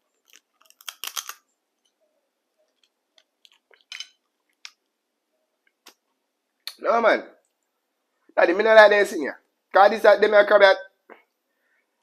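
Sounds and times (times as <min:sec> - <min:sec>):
crab shell cracking: 0:00.1 - 0:02.0, 0:02.7 - 0:04.9.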